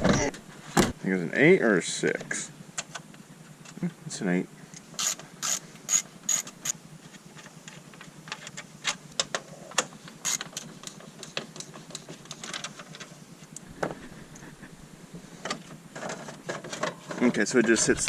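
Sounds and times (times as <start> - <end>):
ratchet clicking: 5.0 - 6.8, 10.2 - 11.0.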